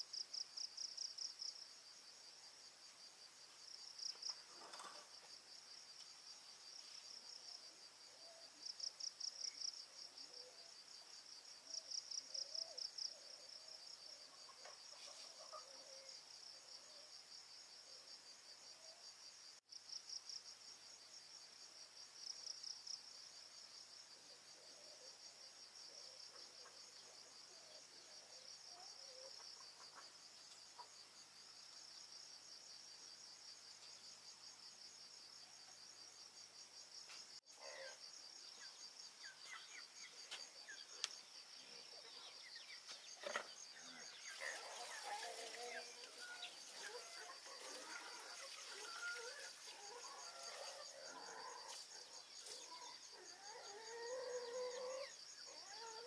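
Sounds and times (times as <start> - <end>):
insects trilling: 23.8 - 56.0.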